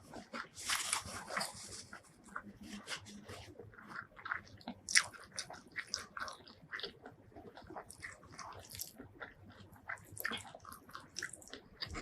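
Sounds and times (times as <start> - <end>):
person chewing food: 0.0 - 12.0.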